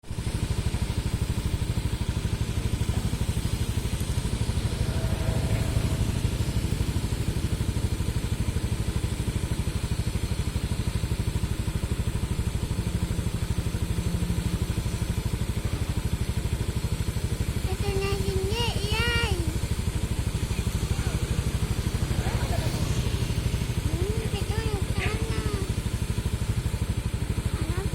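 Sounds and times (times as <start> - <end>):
excavator diesel engine running: 0.1 - 27.9.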